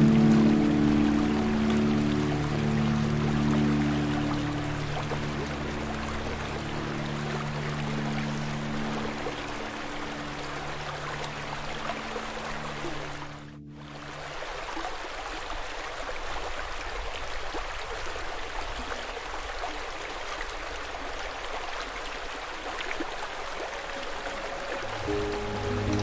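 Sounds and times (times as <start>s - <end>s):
music: 0.0s - 14.4s, 23.4s - 26.0s
river water flowing: 0.0s - 26.0s.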